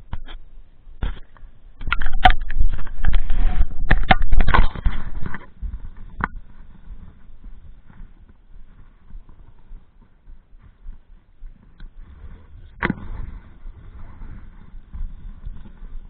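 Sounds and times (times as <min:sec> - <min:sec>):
sharp knocks and clicks: 0:01.0 - 0:06.4
wind buffeting microphone: 0:01.8 - 0:16.0.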